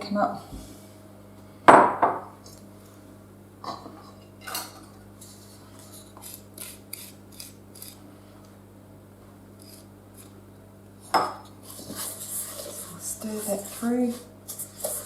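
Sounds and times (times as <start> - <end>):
oven humming: 0.0 - 15.0
coconut scraping into bowl: 11.7 - 13.8.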